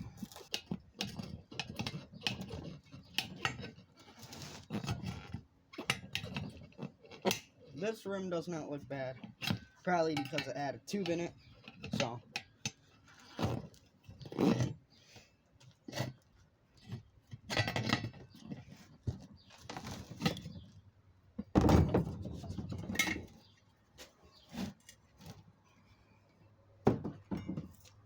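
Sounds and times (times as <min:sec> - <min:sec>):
screwdrivers prying and scraping tire: 0:00.0 - 0:25.9
metal clanks and knocks: 0:09.1 - 0:13.7, 0:16.9 - 0:20.6, 0:21.4 - 0:23.5, 0:26.9 - 0:27.9.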